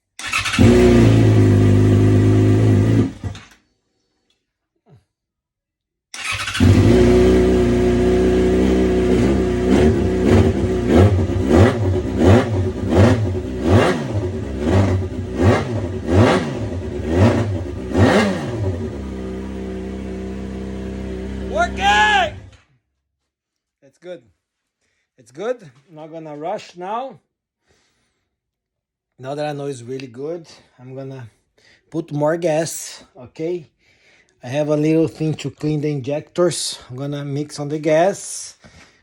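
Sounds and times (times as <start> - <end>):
motorcycle engine revving and idling: 0.2 - 3.4, 6.2 - 22.5.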